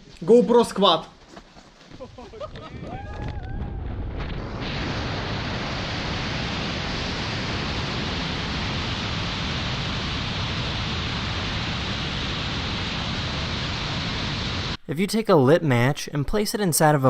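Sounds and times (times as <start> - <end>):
loud steady rushing noise: 4.6 - 14.8.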